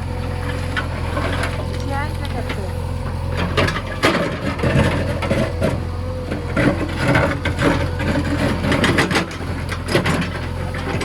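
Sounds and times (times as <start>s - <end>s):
diesel engine running: 0.0s - 11.0s
machine scraping and knocking: 3.3s - 11.0s.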